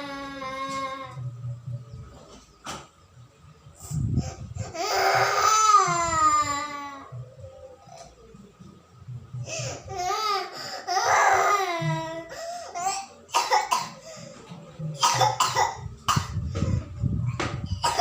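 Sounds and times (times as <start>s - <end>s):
small child crying: 4.6s - 8.1s, 9.9s - 13.0s
child coughing: 12.8s - 14.0s, 15.0s - 16.4s, 17.7s - 18.0s.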